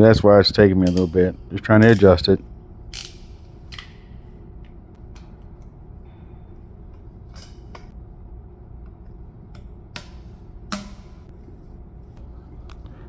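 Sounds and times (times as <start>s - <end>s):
low background hum: 0.0s - 13.0s
clicks of pipe fitting tools: 0.8s - 1.2s, 1.8s - 2.2s, 2.9s - 4.1s, 9.5s - 11.3s.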